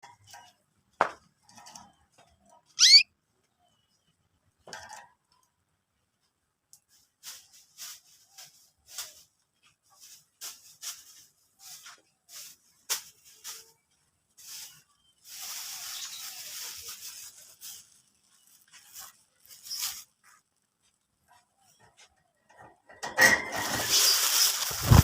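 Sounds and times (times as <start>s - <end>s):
canaries chirping: 2.8s - 3.1s, 15.9s - 16.4s.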